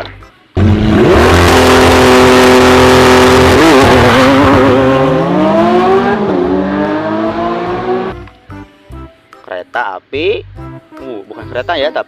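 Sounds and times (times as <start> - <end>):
car engine revving: 0.6 - 8.2.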